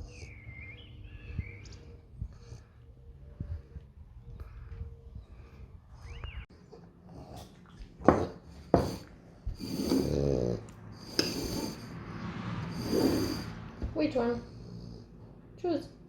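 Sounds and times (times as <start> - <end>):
dog snorting and grunting: 7.0 - 11.9, 12.7 - 13.6.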